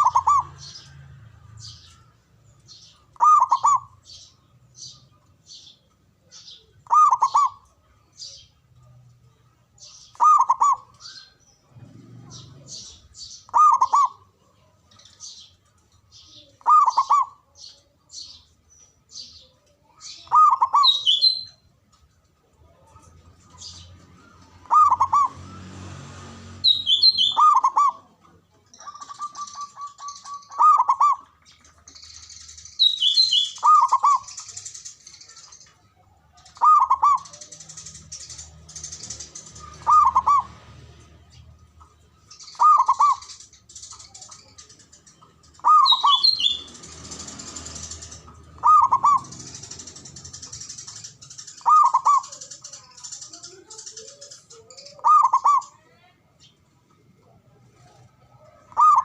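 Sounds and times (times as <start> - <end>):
dove cooing: 0.0 - 1.0, 3.1 - 4.1, 6.5 - 7.8, 10.1 - 14.7, 16.4 - 17.5, 20.2 - 21.6, 23.6 - 25.6, 26.6 - 31.4, 33.1 - 34.8, 36.3 - 40.6, 42.5 - 46.8, 47.5 - 55.8, 57.7 - 59.0
high chirps: 0.0 - 8.5, 20.0 - 21.7, 26.5 - 28.0, 28.8 - 35.8, 41.3 - 55.8.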